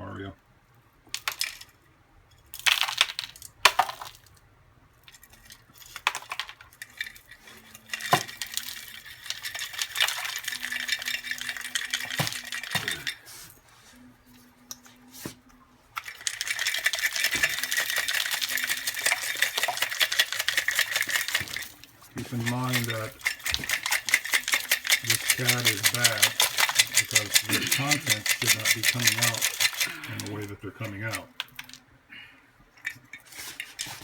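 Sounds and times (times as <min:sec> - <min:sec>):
broken ceramic pieces clinking and rattling: 0:05.1 - 0:13.2, 0:16.0 - 0:31.8.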